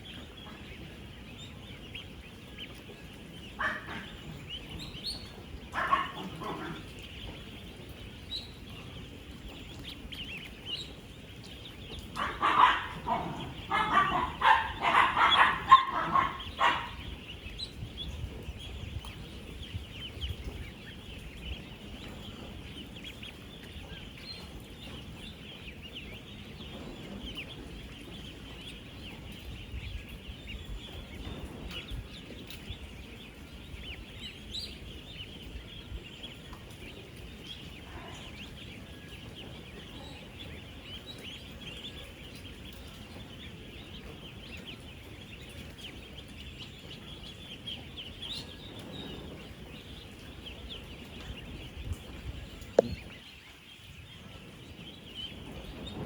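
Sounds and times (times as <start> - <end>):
ducklings peeping: 0.0 - 56.0
louder lower-pitched duckling calls: 3.3 - 7.8, 9.7 - 18.0.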